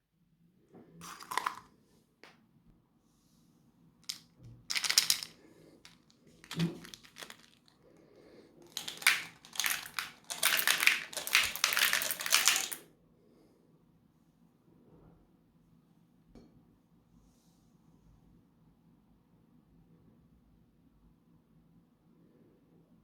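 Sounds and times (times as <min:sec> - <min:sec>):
meat grinder crunching: 0:06.5 - 0:07.6, 0:08.7 - 0:12.8.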